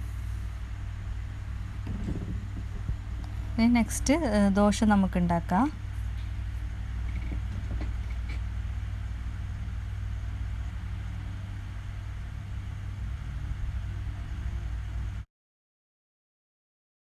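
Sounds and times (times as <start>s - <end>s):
steady low rumble: 0.0s - 15.2s.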